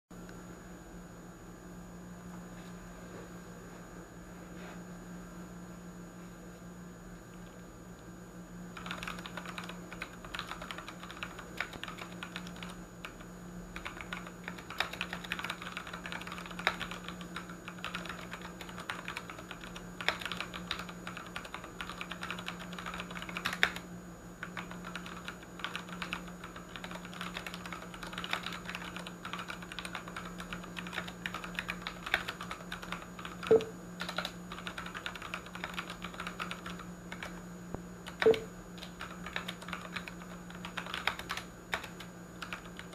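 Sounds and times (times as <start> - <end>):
steady low hum: 0.1 - 42.9
mechanical keyboard typing: 8.8 - 13.2, 13.8 - 23.8, 24.4 - 37.4, 38.1 - 42.9.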